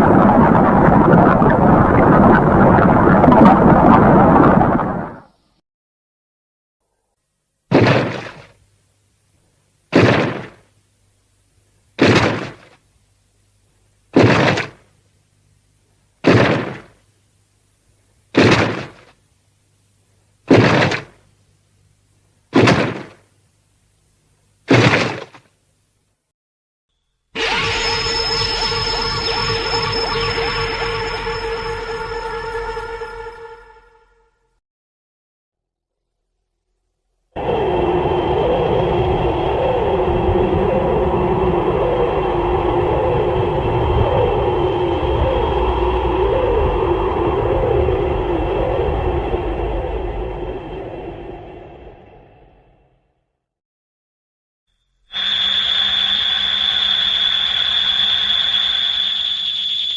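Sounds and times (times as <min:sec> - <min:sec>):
warbling tone: 0:27.4 - 0:34.2, 0:55.2 - 0:59.9
loud steady rumble: 0:37.4 - 0:52.3.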